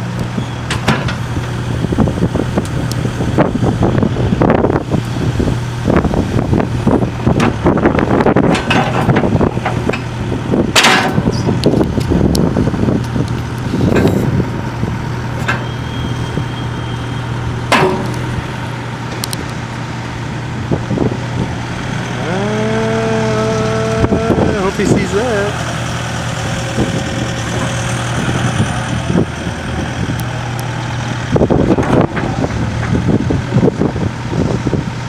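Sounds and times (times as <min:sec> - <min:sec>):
excavator diesel engine running: 0:00.0 - 0:35.0
metallic clanks and knocks: 0:08.4 - 0:10.1, 0:10.7 - 0:11.8, 0:17.7 - 0:18.4.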